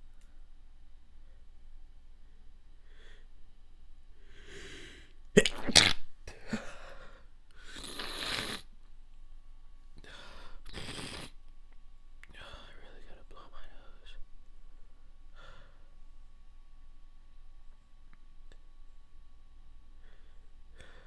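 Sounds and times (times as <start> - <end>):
noisy breathing: 2.8 - 3.3, 4.1 - 5.2, 10.0 - 11.4, 15.3 - 16.0, 20.0 - 21.0
person sneezing: 5.4 - 6.8.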